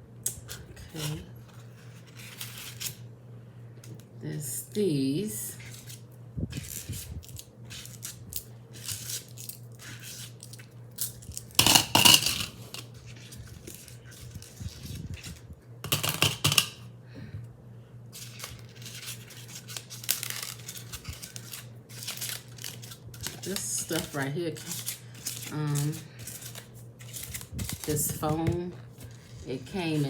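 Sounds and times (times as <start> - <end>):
steady low hum: 0.0 - 30.0
small metal pieces clinking: 11.0 - 12.9
packaging rustling: 18.2 - 30.0.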